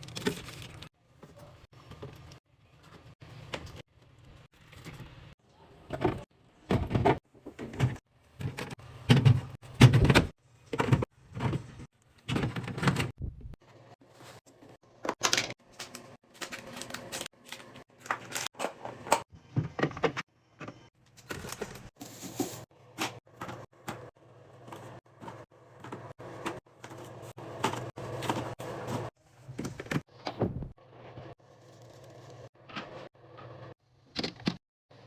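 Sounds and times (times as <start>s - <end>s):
kitchen items clattering: 4.5s - 31.3s.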